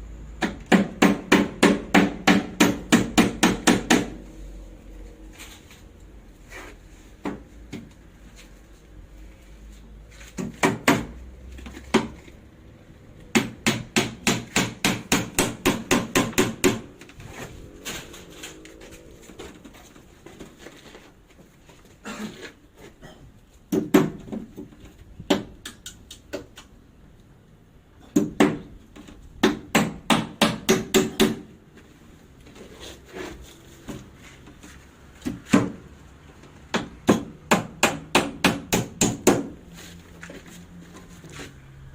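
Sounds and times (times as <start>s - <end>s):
hammer driving nails into wood: 0.4s - 4.2s, 13.3s - 16.9s, 29.4s - 31.5s, 36.7s - 39.5s.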